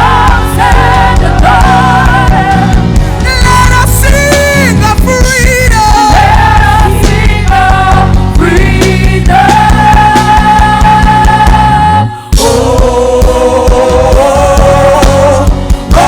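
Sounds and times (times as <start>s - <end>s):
bass: 0.0s - 16.0s
drums: 0.0s - 16.0s
person singing: 0.0s - 16.0s
worship band playing: 0.0s - 16.0s.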